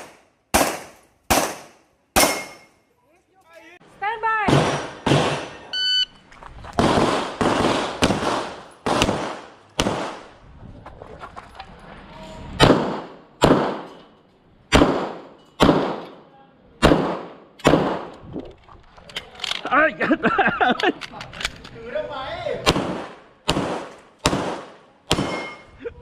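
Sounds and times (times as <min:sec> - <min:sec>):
sharp pistol shots: 0:00.0 - 0:02.6, 0:04.5 - 0:05.6, 0:06.8 - 0:10.3, 0:12.6 - 0:13.9, 0:14.7 - 0:16.1, 0:16.8 - 0:18.1, 0:22.6 - 0:25.6
shot timer beep: 0:05.7 - 0:06.2.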